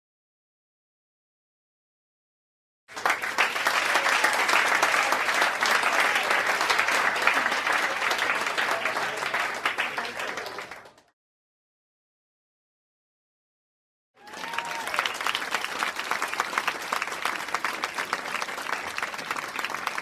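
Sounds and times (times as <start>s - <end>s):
crowd applause: 2.9s - 11.1s, 14.2s - 20.0s.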